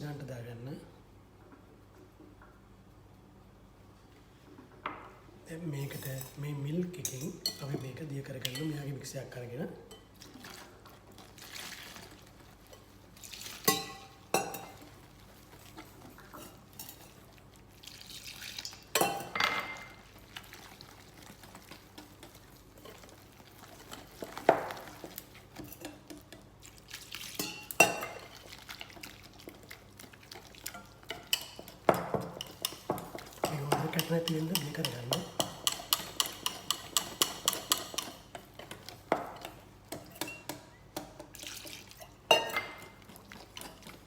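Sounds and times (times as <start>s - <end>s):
utensil stirring batter in bowl: 9.9s - 44.0s
utensil clinking against bowl: 13.6s - 15.0s, 30.6s - 41.2s.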